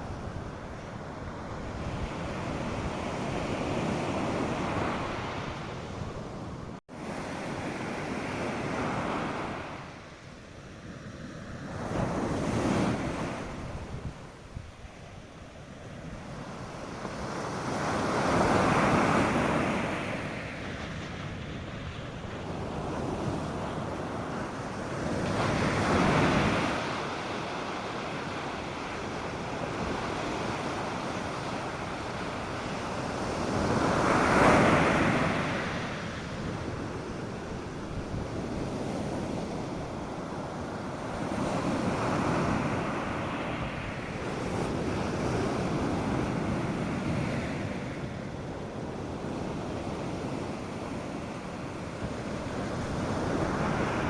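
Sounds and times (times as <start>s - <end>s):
waves breaking on a beach: 0.0s - 54.0s.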